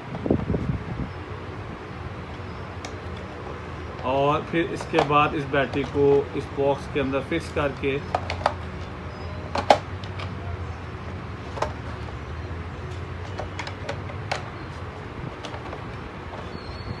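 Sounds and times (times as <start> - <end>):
plastic clicks and knocks: 4.8 - 6.2, 8.1 - 8.6.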